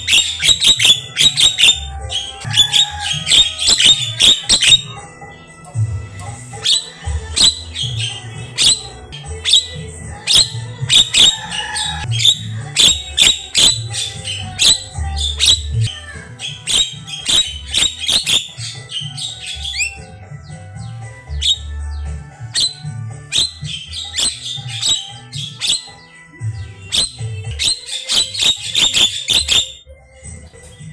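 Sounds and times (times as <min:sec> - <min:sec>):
myna bird calling: 0:00.0 - 0:05.0, 0:06.3 - 0:29.8.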